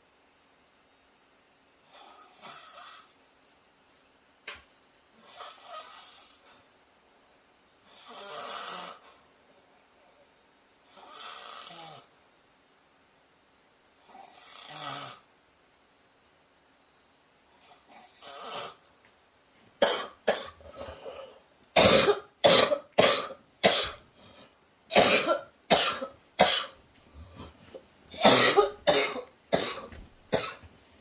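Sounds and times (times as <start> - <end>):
faint snore: 1.8 - 3.2, 5.2 - 6.7, 7.8 - 9.3, 10.8 - 12.2, 14.0 - 15.3, 17.5 - 18.8
harsh coughing: 19.8 - 24.1, 24.9 - 26.8, 28.1 - 30.7.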